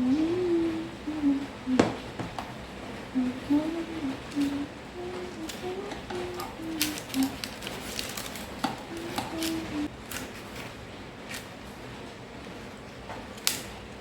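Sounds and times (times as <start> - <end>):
taps and clicks of handled packaging: 5.5 - 10.7.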